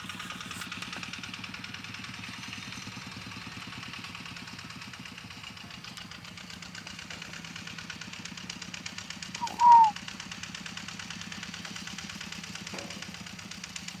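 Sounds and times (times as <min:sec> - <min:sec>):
descending bird call: 0:09.4 - 0:10.0.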